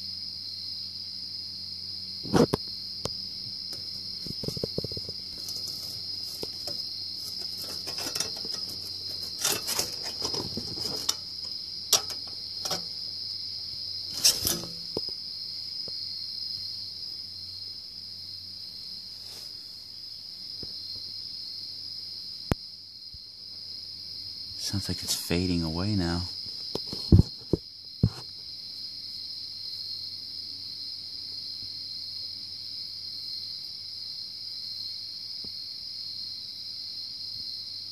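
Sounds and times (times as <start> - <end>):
rustling clicks and knocks: 3.8 - 13.0, 14.1 - 15.2.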